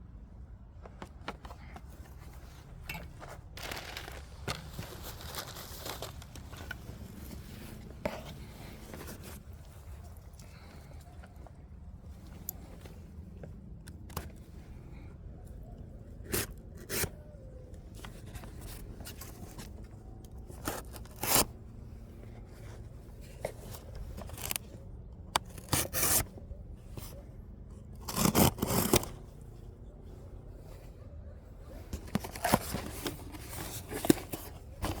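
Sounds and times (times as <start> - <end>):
packaging scrapes and rustles: 3.5 - 9.4, 20.4 - 21.5, 22.6 - 24.7, 28.0 - 29.4, 31.8 - 35.0.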